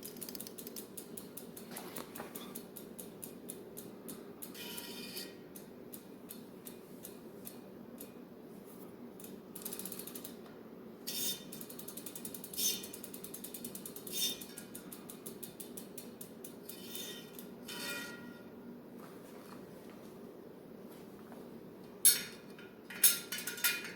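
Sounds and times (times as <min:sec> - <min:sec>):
bicycle freewheel ticking: 0:00.0 - 0:08.2, 0:09.2 - 0:10.4, 0:11.0 - 0:17.6.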